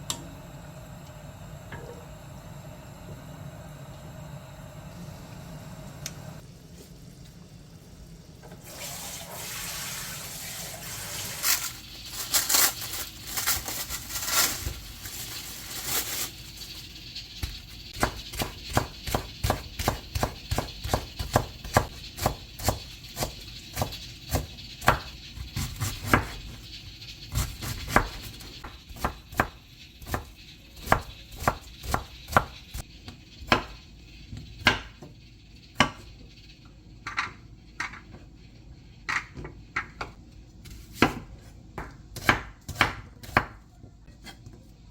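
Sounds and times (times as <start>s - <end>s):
water running from tap: 7.4s - 33.5s
knife chopping on cutting board: 18.0s - 25.0s, 40.6s - 43.6s.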